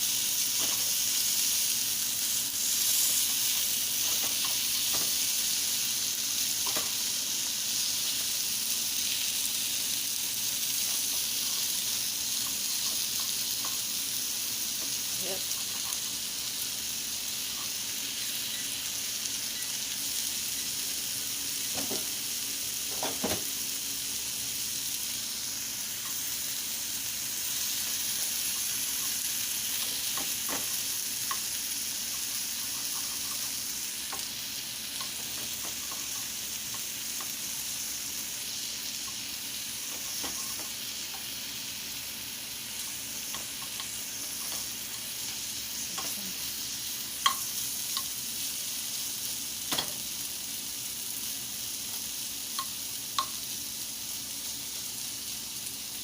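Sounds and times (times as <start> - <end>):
chicken sizzling: 0.0 - 56.0.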